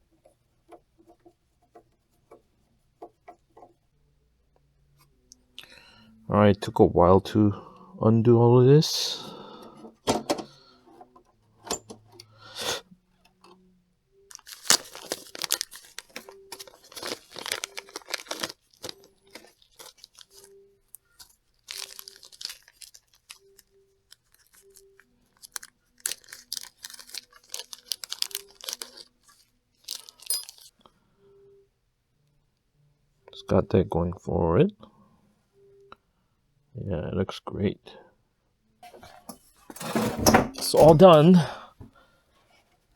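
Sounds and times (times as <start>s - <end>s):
crinkly tearing and crunching: 14.3s - 30.7s.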